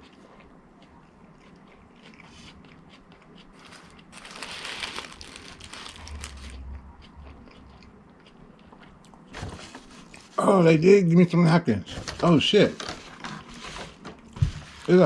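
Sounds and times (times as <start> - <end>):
paper packaging rustling: 3.6 - 6.5, 9.4 - 10.4, 11.9 - 15.0.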